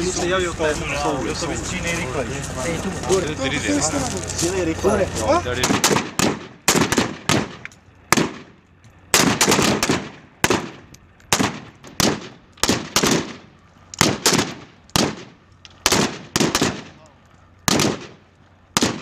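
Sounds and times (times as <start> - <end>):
rifle single shots with echo: 5.6 - 17.0, 17.6 - 19.0.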